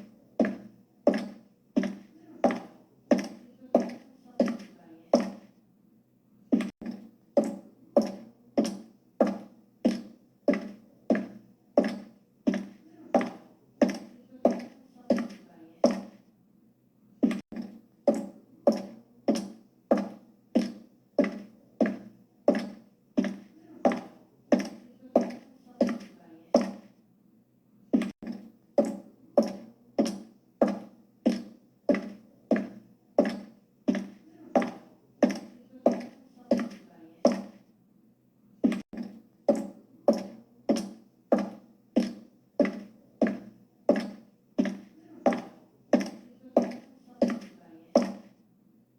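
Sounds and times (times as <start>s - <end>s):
high heels clicking on hard floor: 0.4s - 5.5s, 6.5s - 16.2s, 17.2s - 26.9s, 28.0s - 37.6s, 38.6s - 48.3s.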